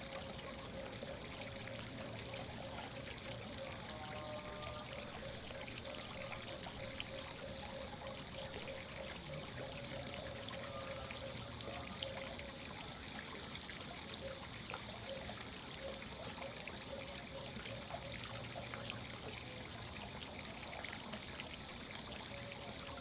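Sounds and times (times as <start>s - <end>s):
water running and trickling: 0.0s - 23.0s.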